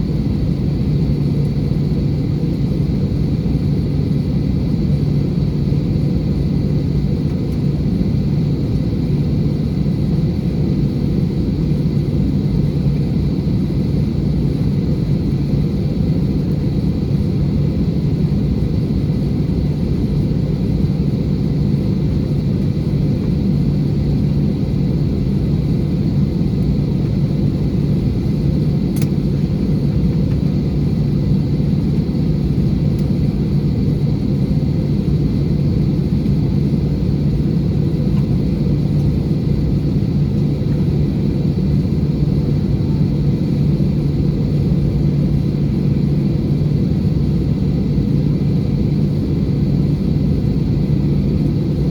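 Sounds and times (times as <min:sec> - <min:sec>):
jet engine cabin rumble: 0:00.0 - 0:51.9
brief click: 0:29.0 - 0:29.2.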